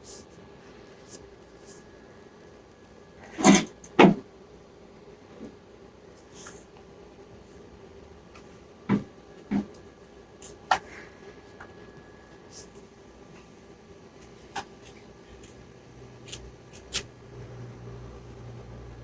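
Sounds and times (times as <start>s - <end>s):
faint steady hum: 0.0s - 19.0s.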